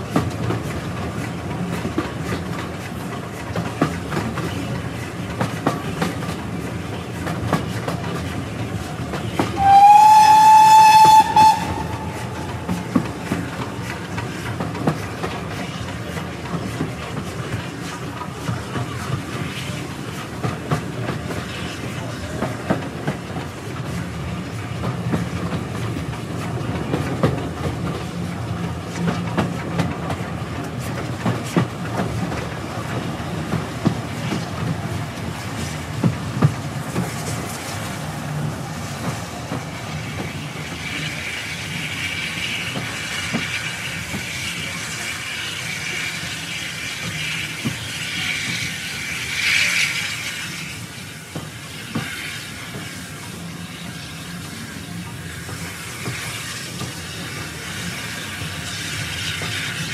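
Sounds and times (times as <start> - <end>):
train carriage rumble: 0.0 - 59.9.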